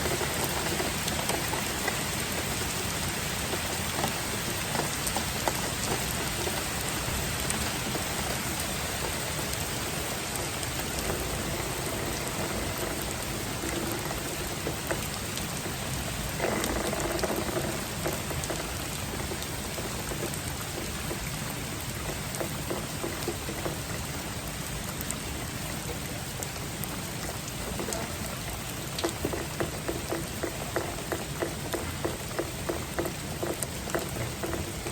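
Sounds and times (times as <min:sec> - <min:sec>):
rain falling: 0:00.0 - 0:34.9
raindrops clicking: 0:00.0 - 0:34.9.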